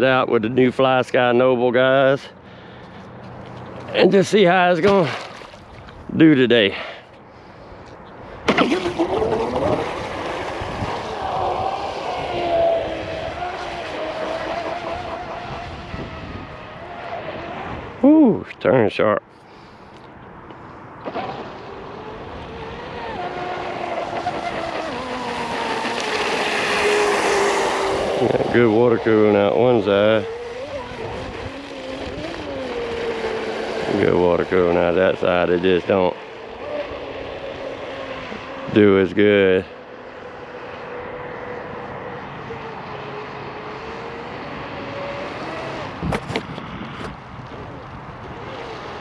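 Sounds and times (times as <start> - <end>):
electric motor whine: 21.2 - 34.8.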